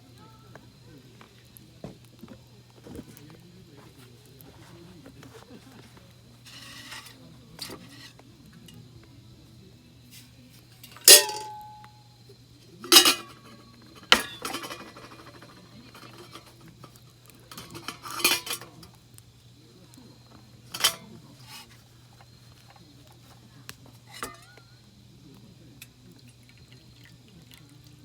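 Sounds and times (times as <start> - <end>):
metal cookware clinking: 5.2 - 8.2, 10.2 - 12.0, 12.8 - 19.0, 20.6 - 21.8, 24.0 - 24.6.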